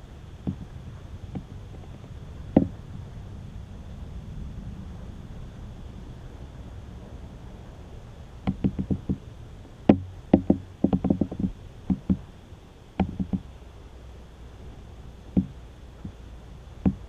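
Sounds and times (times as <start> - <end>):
low steady rumble: 0.0 - 17.0
irregular knocking: 0.4 - 0.7, 2.5 - 2.8, 8.4 - 9.2, 9.9 - 12.3, 13.0 - 13.5, 15.3 - 16.2.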